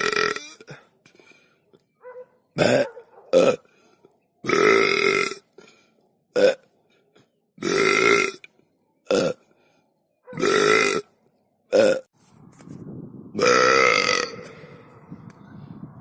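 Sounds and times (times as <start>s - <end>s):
long belches: 0.0s - 0.8s, 2.6s - 3.7s, 4.4s - 5.5s, 6.4s - 6.6s, 7.6s - 8.5s, 9.1s - 9.4s, 10.3s - 11.1s, 11.7s - 12.1s, 13.4s - 14.8s
short sharp burp: 10.4s - 11.1s, 13.4s - 14.8s.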